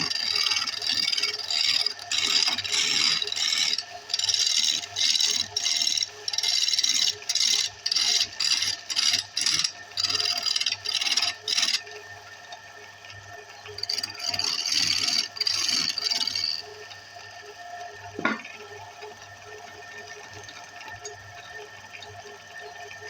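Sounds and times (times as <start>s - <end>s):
lathe motor humming: 0.0s - 11.9s, 13.8s - 17.0s
tool scraping spinning wood: 0.0s - 11.9s, 13.7s - 16.8s.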